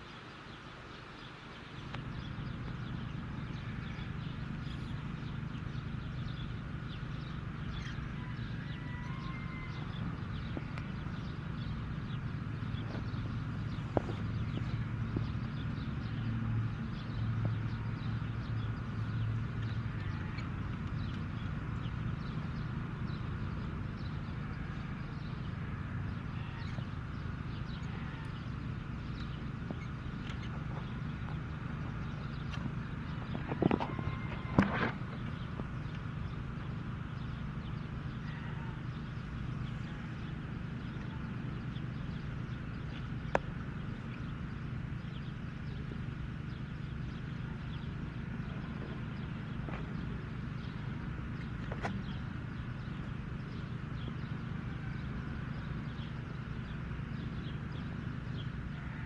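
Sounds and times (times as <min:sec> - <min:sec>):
birds chirping: 0:00.0 - 0:59.0
steady low rumble: 0:00.1 - 0:59.0
faint chirps and scratches: 0:26.4 - 0:36.7, 0:47.7 - 0:52.7.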